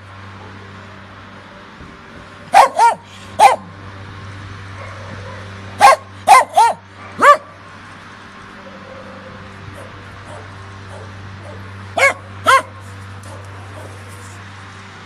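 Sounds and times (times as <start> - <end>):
dog yapping: 2.6 - 3.7, 4.8 - 7.5, 10.3 - 12.7.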